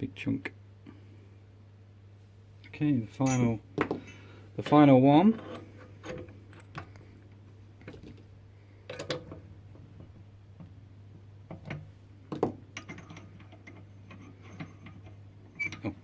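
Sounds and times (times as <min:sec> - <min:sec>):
steady low hum: 0:00.0 - 0:16.0
tools clicking and knocking: 0:11.5 - 0:15.9.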